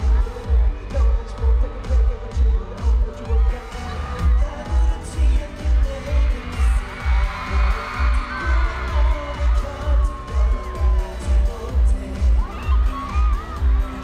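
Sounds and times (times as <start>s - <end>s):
crowd screaming: 0.0s - 14.0s
pop music over loudspeakers: 0.0s - 14.0s.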